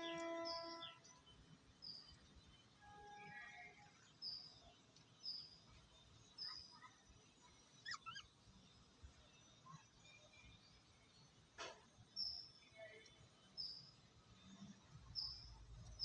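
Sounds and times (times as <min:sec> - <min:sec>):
lovebirds chirping: 0:00.0 - 0:02.6, 0:04.0 - 0:08.4.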